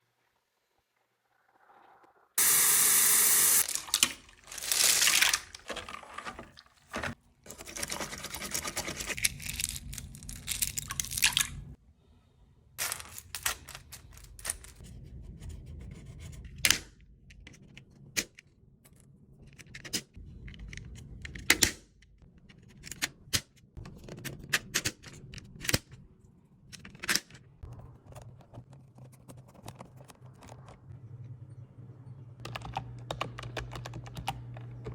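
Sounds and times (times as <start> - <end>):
plastic keyboard keys clicking: 26.8 - 30.8, 32.4 - 34.9.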